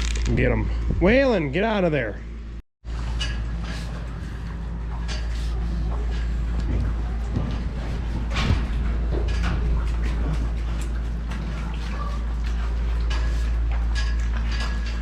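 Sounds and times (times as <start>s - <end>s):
gates and hooves clanking: 3.0s - 15.0s.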